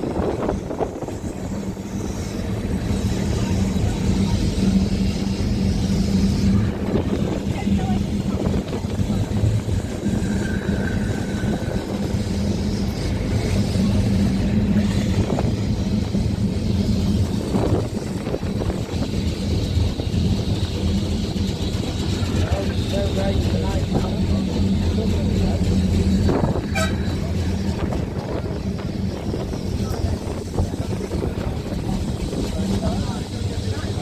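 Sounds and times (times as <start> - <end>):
tram motor hum: 0.0 - 34.0
wheels rumbling on track: 0.0 - 34.0.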